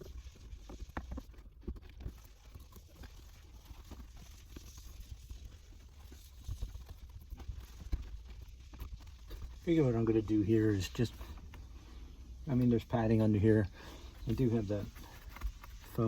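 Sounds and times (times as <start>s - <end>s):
carpet being handled and trimmed: 12.5s - 16.0s.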